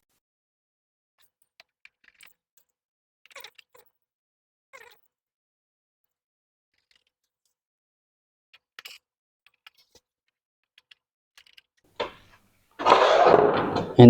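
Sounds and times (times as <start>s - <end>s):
loud scraping rustle: 12.0s - 14.0s
plastic panels clicking: 12.8s - 14.0s
sharp knock: 12.8s - 14.0s.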